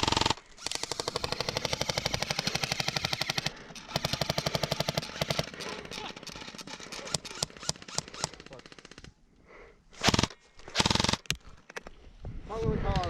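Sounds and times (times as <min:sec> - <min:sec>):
airsoft guns firing bursts: 0:00.0 - 0:09.0, 0:10.0 - 0:11.3.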